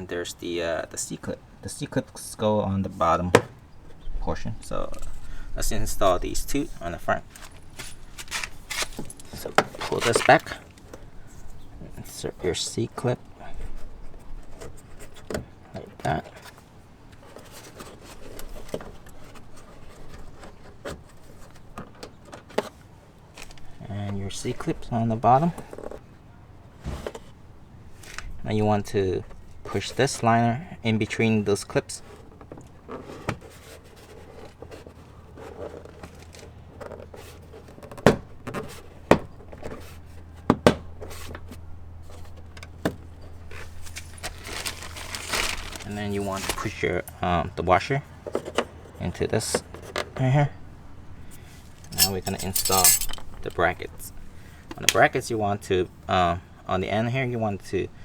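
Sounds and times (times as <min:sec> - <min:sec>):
plastic scraping and rustling: 0:04.6 - 0:30.4, 0:31.1 - 0:50.2
hands rubbing plastic liner: 0:43.4 - 0:46.8.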